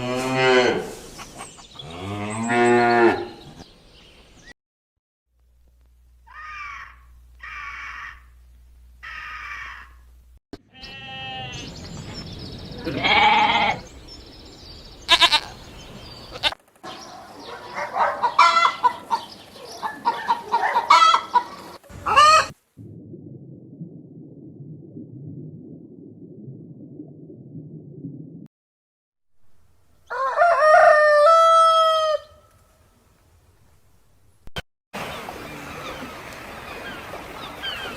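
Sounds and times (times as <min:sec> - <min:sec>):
low steady rumbling: 0:22.8 - 0:28.5.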